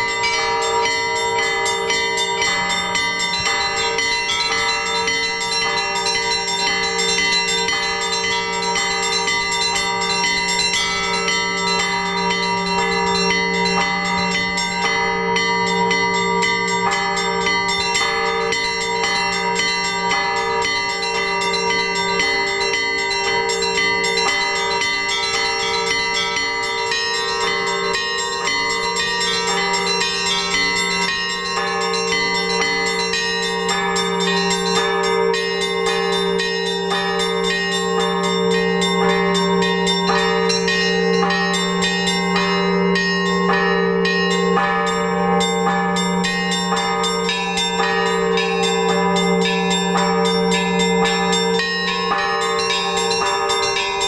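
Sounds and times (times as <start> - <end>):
larger bells ringing: 0.0 - 54.0
small bells ringing quickly: 0.0 - 54.0.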